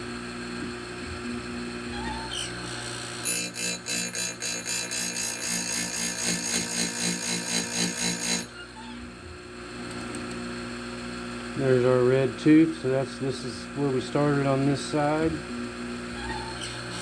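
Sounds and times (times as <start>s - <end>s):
chain grinder motor running: 2.2s - 8.6s, 16.3s - 17.0s.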